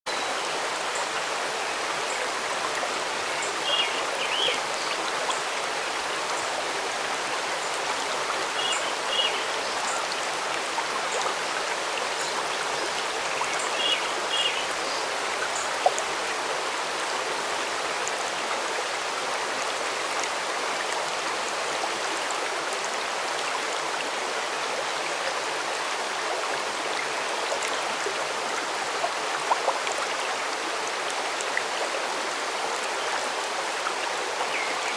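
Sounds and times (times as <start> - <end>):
stream running: 0.1 - 34.9.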